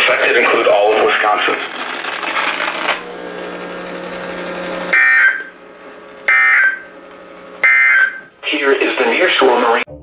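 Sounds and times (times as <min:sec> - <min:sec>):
broadcast voice: 0:00.0 - 0:01.7, 0:08.4 - 0:09.9
low steady hum: 0:03.0 - 0:08.6
warbling electronic data burst: 0:04.8 - 0:07.0, 0:07.6 - 0:08.3.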